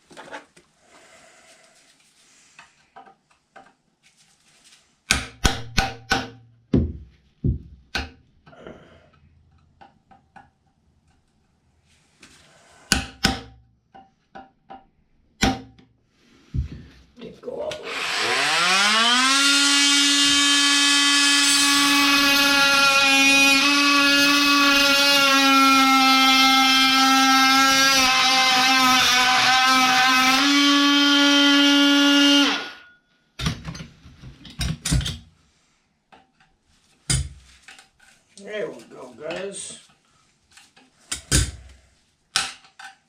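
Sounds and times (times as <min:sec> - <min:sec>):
oscillating multi-tool whining: 0:17.8 - 0:33.0.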